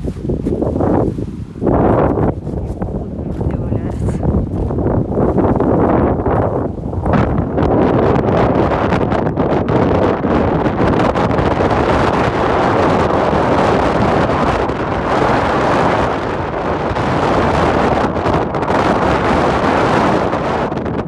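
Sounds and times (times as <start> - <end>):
strong wind buffeting microphone: 0.0 - 21.0.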